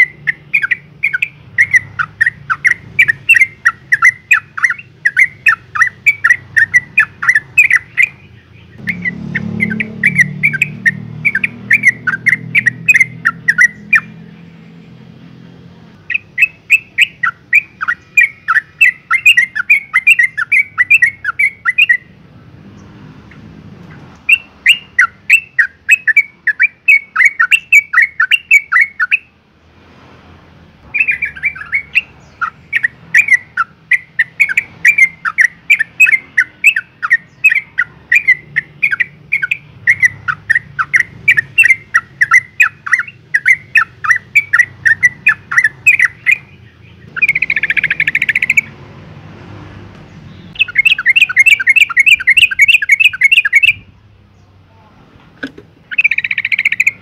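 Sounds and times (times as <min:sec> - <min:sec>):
harsh buzzy bird call: 0:00.0 - 0:14.5, 0:16.0 - 0:22.2, 0:30.8 - 0:48.8, 0:50.2 - 0:54.0, 0:55.8 - 0:57.0
bulbul chattering call: 0:00.0 - 0:14.6, 0:15.9 - 0:22.2, 0:22.8 - 0:29.3, 0:30.8 - 0:48.8, 0:50.1 - 0:54.6, 0:55.4 - 0:57.0.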